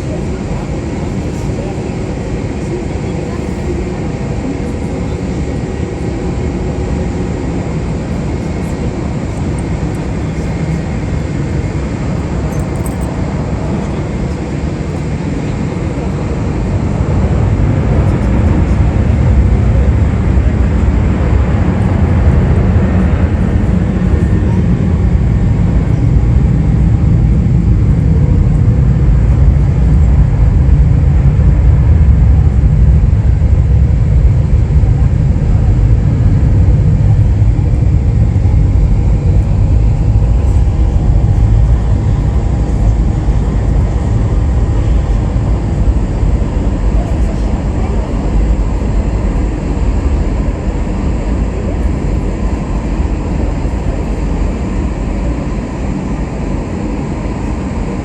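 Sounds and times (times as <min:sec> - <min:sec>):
jet airliner engines rumbling: 0:00.0 - 0:58.0.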